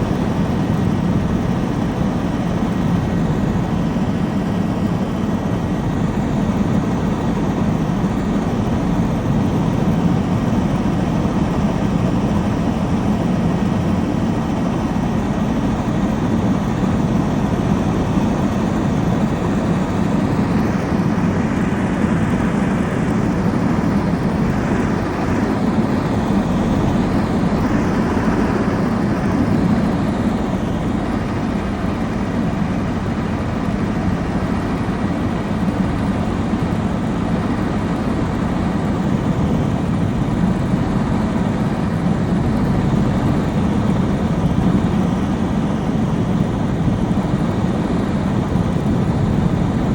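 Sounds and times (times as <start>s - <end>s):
helicopter in flight: 0.0s - 49.9s.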